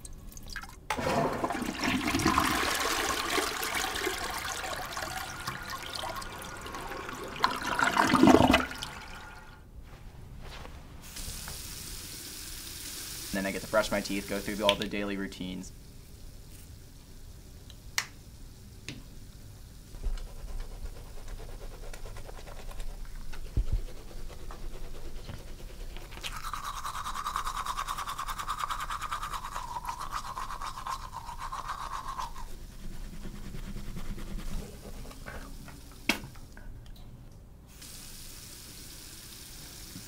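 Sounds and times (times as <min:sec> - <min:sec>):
toothbrush scrubbing teeth: 0:20.0 - 0:35.8.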